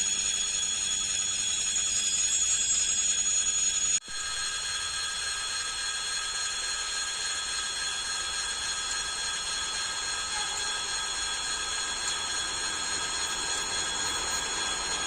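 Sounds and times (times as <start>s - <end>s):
high bell ringing: 9.4s - 15.0s.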